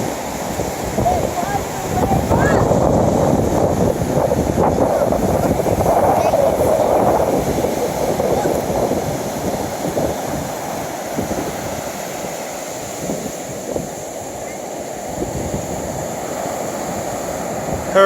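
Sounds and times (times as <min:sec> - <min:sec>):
surf breaking: 0:00.0 - 0:18.0
wind buffeting microphone: 0:00.0 - 0:18.0.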